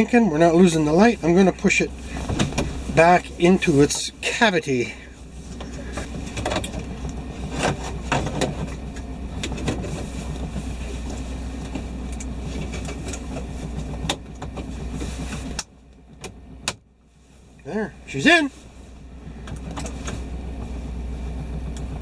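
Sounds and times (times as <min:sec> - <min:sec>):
pickup engine idling: 0:00.0 - 0:22.0.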